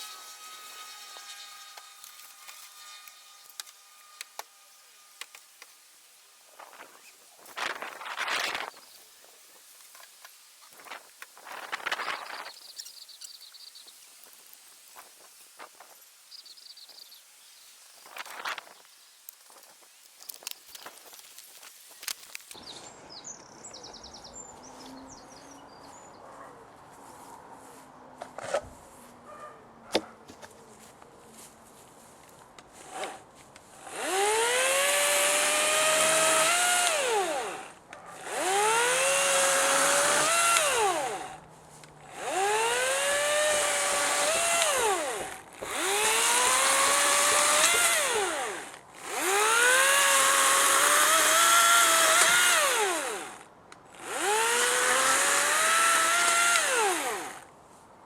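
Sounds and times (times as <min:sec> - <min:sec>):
electric chainsaw whining: 0:00.0 - 0:05.6, 0:32.7 - 0:57.5.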